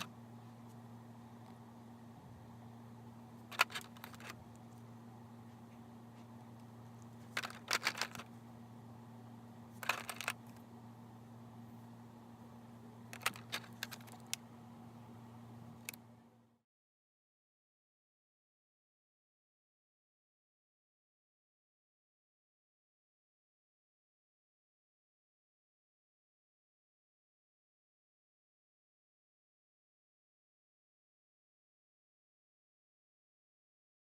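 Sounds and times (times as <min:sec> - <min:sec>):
low electrical hum: 0:00.0 - 0:16.6.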